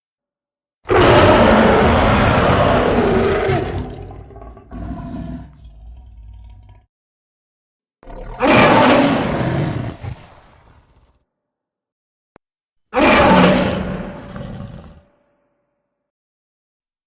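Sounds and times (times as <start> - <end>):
weak monster call: 0.9 - 6.3, 8.1 - 11.0, 13.0 - 15.1
monster roaring: 0.9 - 6.8, 8.1 - 11.1, 13.0 - 15.1.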